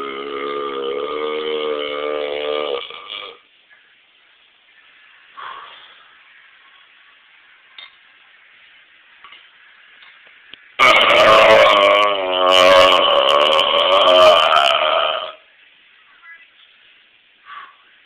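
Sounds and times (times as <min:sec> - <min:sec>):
person belching: 0:00.0 - 0:03.4, 0:10.8 - 0:15.4
faint hiss: 0:00.0 - 0:10.8, 0:14.9 - 0:18.0.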